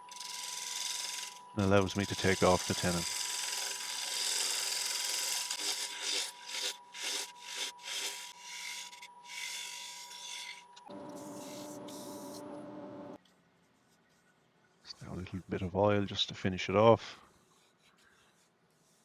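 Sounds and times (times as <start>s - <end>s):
gouge cutting wood: 0.0s - 12.5s
wood lathe whine: 0.0s - 13.2s.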